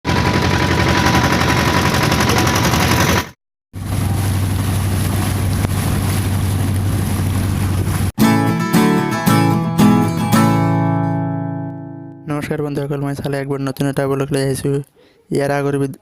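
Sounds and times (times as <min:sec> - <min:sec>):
motorboat engine humming: 0:00.1 - 0:12.2
wind noise: 0:03.8 - 0:08.1
rushing water: 0:03.8 - 0:08.4.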